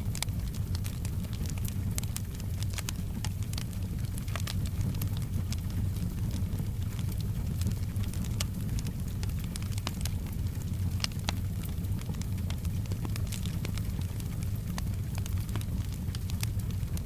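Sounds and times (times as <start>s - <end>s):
low rumble of burning: 0.0s - 17.0s
wood fire crackling: 0.0s - 17.0s.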